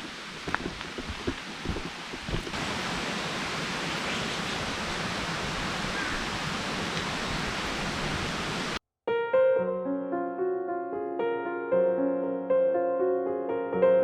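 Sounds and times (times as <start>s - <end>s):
mountain stream rushing: 0.0s - 8.8s
soft piano music: 9.1s - 14.0s.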